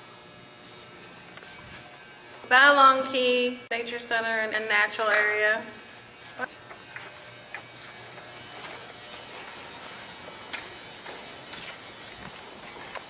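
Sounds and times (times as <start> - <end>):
high-pitched insect buzz: 0.0 - 13.0.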